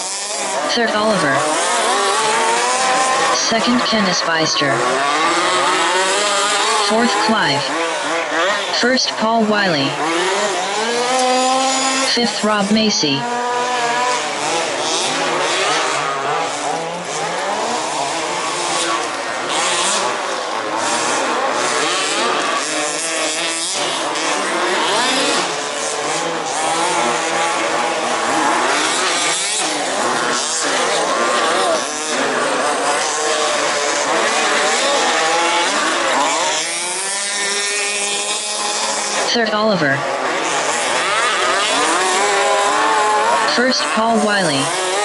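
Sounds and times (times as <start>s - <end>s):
high-pitched small engines revving: 0.0s - 45.0s.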